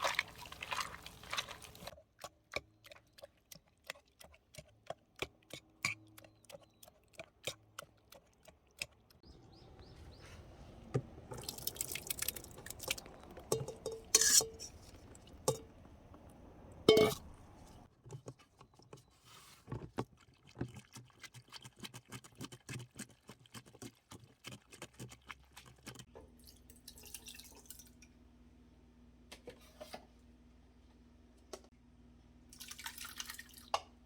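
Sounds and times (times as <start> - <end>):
small drips and clicks: 11.3 - 14.2, 19.9 - 28.2, 32.5 - 34.0.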